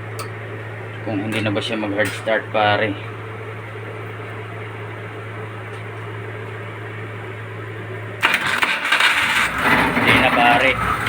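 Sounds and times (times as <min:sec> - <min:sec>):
steady low hum: 0:00.0 - 0:08.4
car engine cranking and starting: 0:08.2 - 0:11.0.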